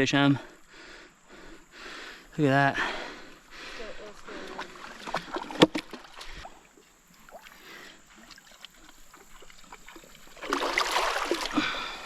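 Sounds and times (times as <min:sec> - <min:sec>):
river water splashing: 0:03.0 - 0:12.0.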